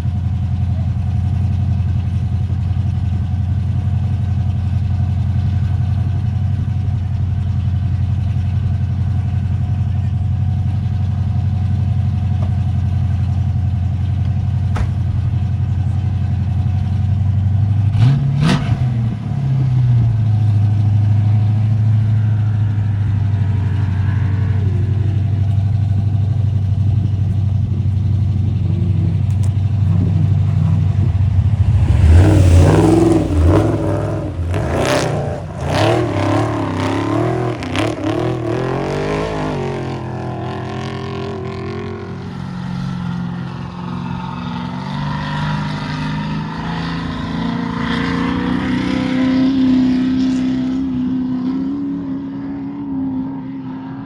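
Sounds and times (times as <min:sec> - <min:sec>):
engine idling and revving: 0:00.0 - 0:54.0
loud rushing noise: 0:30.0 - 0:37.3.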